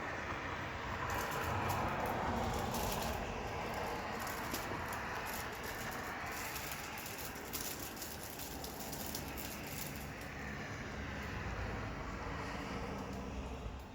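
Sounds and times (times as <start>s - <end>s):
light crackles and ticks: 1.0s - 10.6s, 12.8s - 13.9s.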